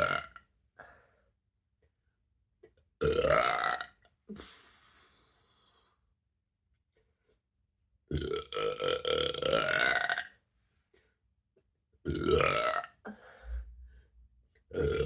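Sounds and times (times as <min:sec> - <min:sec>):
woman belching loudly: 0:00.0 - 0:00.3, 0:03.0 - 0:03.9, 0:12.1 - 0:12.9, 0:14.8 - 0:15.0.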